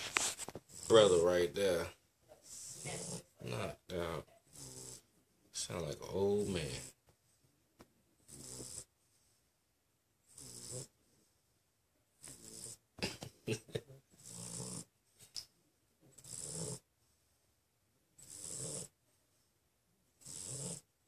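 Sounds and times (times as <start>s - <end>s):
dog snoring: 0.6s - 1.4s, 2.4s - 3.8s, 4.5s - 5.1s, 6.4s - 7.0s, 8.2s - 9.3s, 10.2s - 11.2s, 12.2s - 12.8s, 14.2s - 14.9s, 16.1s - 16.9s, 18.2s - 19.0s, 20.2s - 20.9s.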